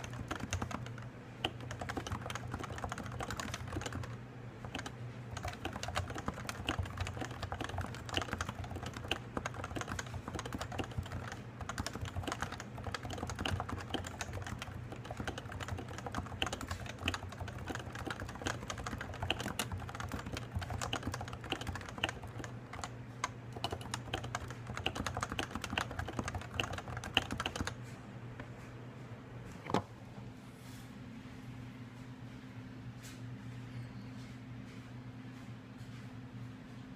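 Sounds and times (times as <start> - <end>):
keyboard typing: 0.0 - 27.8
faint steady hum: 0.0 - 36.9.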